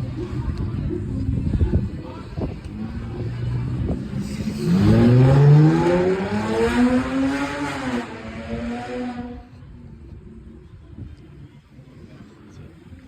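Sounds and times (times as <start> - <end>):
vehicle engine accelerating: 2.7 - 9.5.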